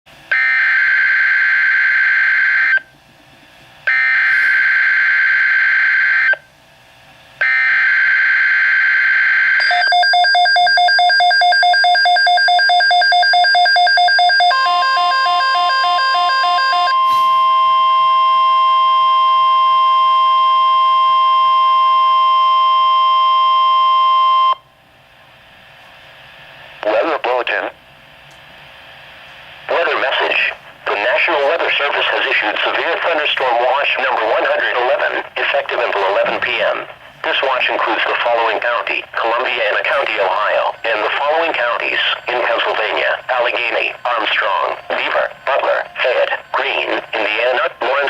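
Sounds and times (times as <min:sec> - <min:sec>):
long steady alarm tone: 0:00.3 - 0:02.9, 0:03.8 - 0:06.5, 0:07.4 - 0:24.7, 0:39.2 - 0:48.0
rapid pulsing beeps: 0:09.6 - 0:24.6, 0:37.3 - 0:48.0.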